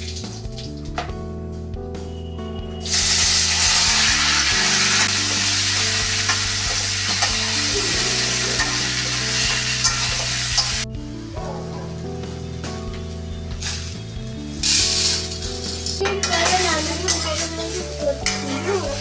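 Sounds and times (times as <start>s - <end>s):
background music with held notes: 0.0s - 19.0s
loud steady hiss: 2.8s - 10.8s.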